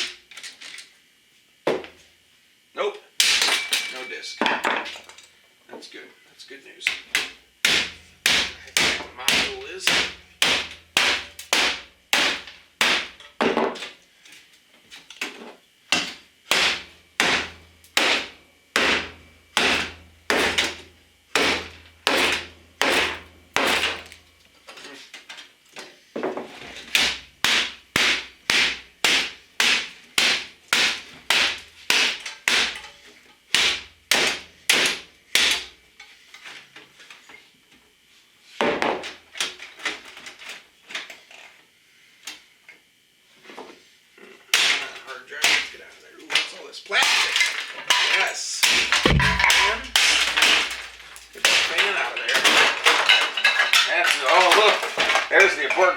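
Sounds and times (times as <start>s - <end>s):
hammer smashing computer: 7.7s - 13.2s, 16.5s - 24.1s, 48.6s - 53.9s.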